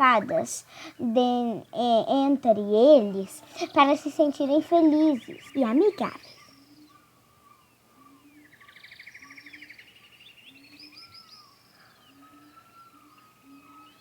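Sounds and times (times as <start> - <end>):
down-slurred bird chirps: 1.5 - 14.0
bird trilling: 3.0 - 14.0.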